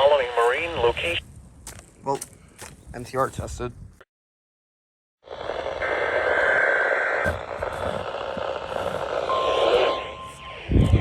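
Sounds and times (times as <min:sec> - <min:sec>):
radio static: 0:00.0 - 0:01.2, 0:05.3 - 0:11.0
faint steady warning tone: 0:09.0 - 0:11.0.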